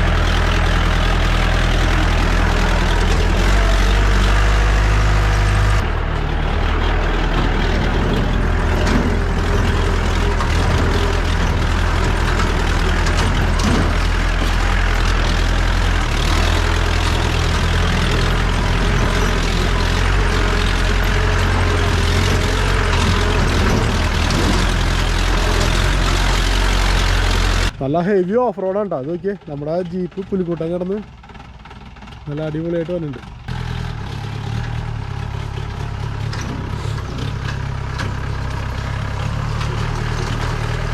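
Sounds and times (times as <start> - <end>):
knocks and rattles: 0.0 - 27.7, 33.1 - 40.9
jeep engine droning: 0.0 - 40.9.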